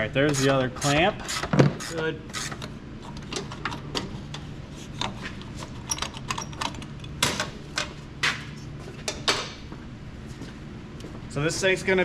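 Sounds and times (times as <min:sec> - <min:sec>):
metallic clicks and clanks of tools: 0:05.0 - 0:07.9.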